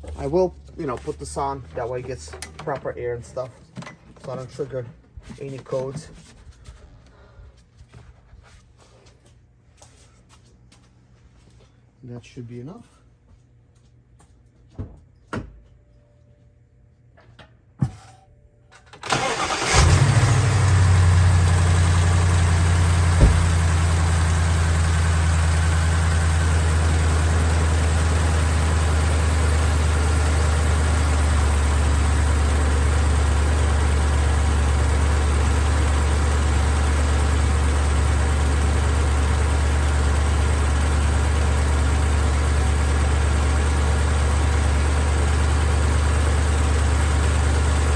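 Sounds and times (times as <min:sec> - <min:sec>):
car engine starting and idling: 0:18.9 - 0:47.9.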